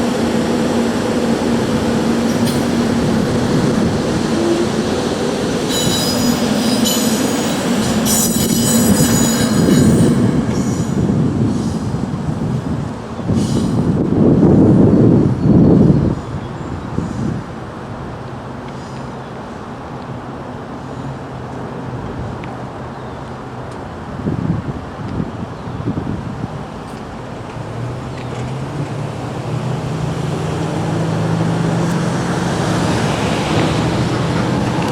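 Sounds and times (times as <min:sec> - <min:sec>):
road noise: 0:00.0 - 0:34.9
train wheels rumbling on rails: 0:00.0 - 0:34.9
high-pitched wheel squeal: 0:05.7 - 0:11.9
low vehicle engine drone: 0:26.6 - 0:34.9.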